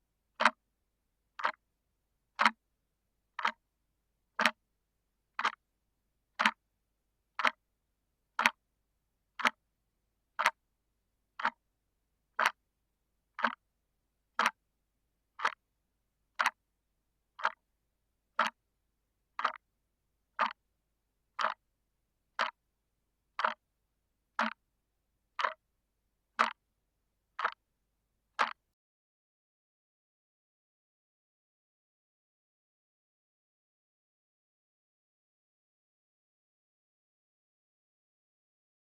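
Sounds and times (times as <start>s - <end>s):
clock ticking: 0.4s - 0.6s, 1.4s - 1.6s, 2.4s - 2.6s, 3.4s - 3.6s, 4.4s - 4.6s, 5.4s - 5.6s, 6.4s - 6.6s, 7.4s - 7.6s, 8.4s - 8.6s, 9.4s - 9.6s, 10.4s - 10.6s, 11.4s - 11.6s, 12.4s - 12.6s, 13.4s - 13.6s, 14.4s - 14.6s, 15.4s - 15.6s, 16.4s - 16.6s, 17.4s - 17.6s, 18.4s - 18.6s, 19.4s - 19.6s, 20.4s - 20.6s, 21.4s - 21.6s, 22.4s - 22.6s, 23.4s - 23.6s, 24.4s - 24.6s, 25.4s - 25.6s, 26.4s - 26.6s, 27.4s - 27.6s, 28.4s - 28.6s.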